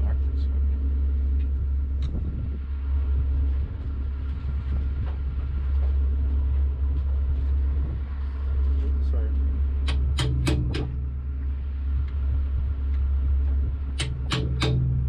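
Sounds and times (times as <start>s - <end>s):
engine idling: 0.0s - 15.0s.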